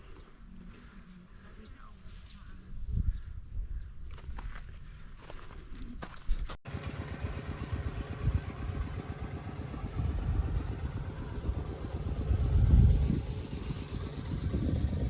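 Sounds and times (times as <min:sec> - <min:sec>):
small engine rumbling: 0:06.6 - 0:15.0.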